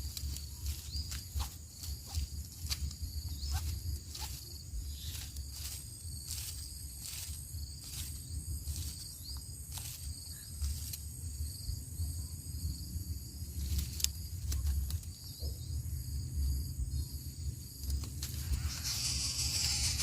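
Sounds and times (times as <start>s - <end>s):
crickets chirping: 0.0s - 20.0s
low rumble: 15.7s - 20.0s.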